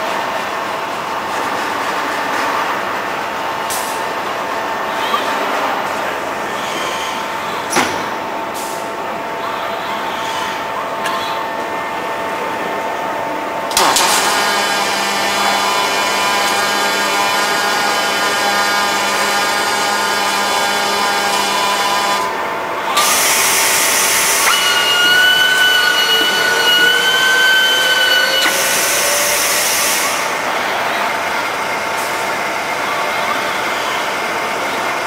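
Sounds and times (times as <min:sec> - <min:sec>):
robot motor whine: 0:23.0 - 0:30.2.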